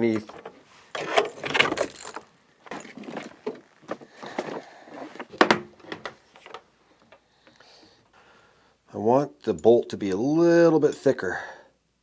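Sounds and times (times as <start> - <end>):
scraping and rustling: 0.0 - 6.7.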